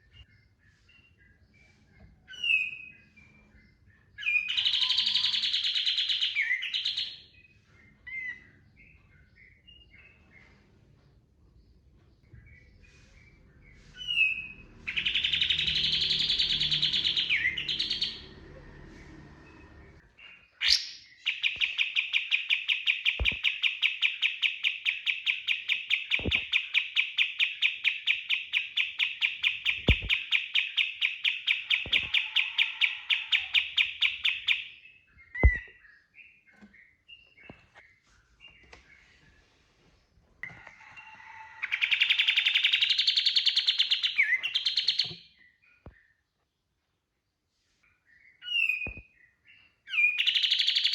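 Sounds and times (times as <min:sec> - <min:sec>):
songbird singing trills: 0:00.0 - 0:10.3, 0:13.6 - 0:19.2, 0:20.2 - 0:37.6, 0:41.7 - 0:46.0, 0:48.1 - 0:50.9.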